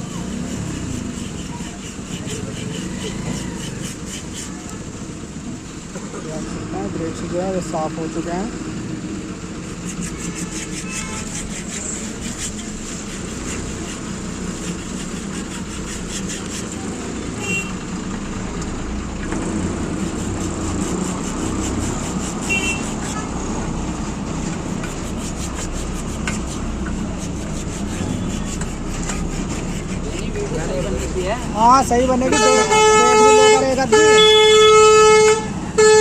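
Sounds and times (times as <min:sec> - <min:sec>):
street traffic: 0:00.0 - 0:36.0
short horn toots: 0:22.4 - 0:23.3, 0:32.3 - 0:36.0.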